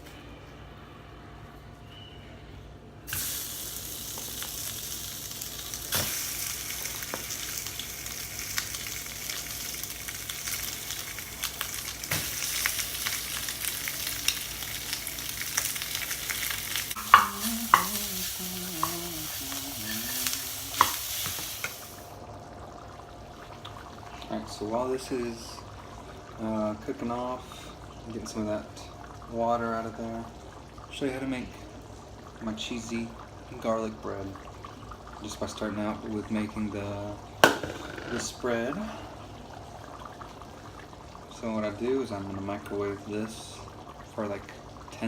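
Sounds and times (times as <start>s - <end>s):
sauce sizzling in a pot: 3.1s - 22.9s.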